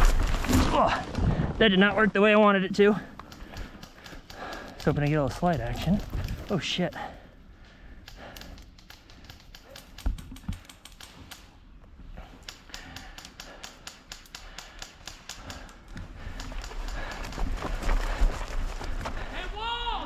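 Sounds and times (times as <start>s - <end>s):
airsoft gunfire ticks: 3.1s - 7.1s, 8.0s - 11.5s, 12.4s - 17.4s.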